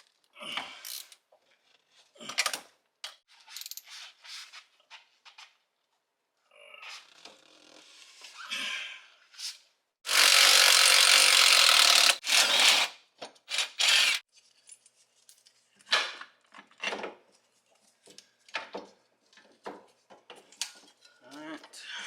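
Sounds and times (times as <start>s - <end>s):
impact wrench running: 10.1s - 12.9s, 13.5s - 14.2s.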